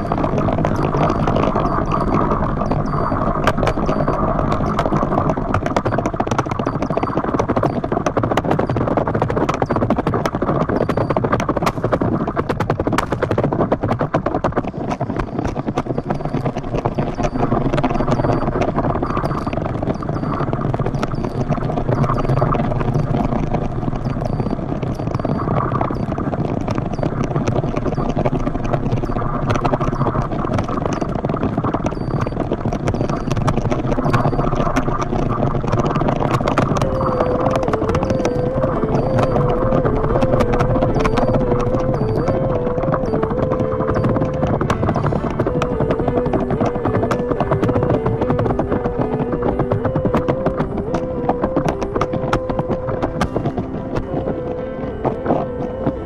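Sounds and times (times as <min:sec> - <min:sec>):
board chattering over choppy water: 0:00.0 - 0:56.0.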